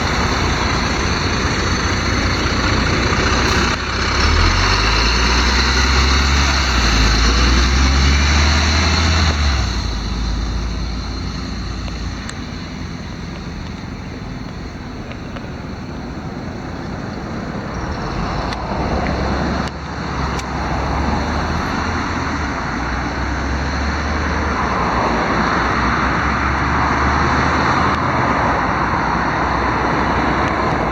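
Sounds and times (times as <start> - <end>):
bus engine hum: 0.0 - 30.9
road noise: 0.0 - 30.9.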